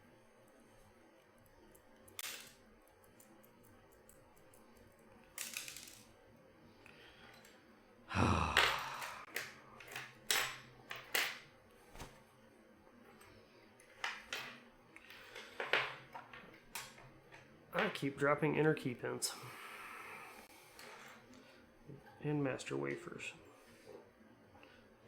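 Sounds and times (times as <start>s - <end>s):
tiny pins dropping on surface: 5.4s - 6.1s.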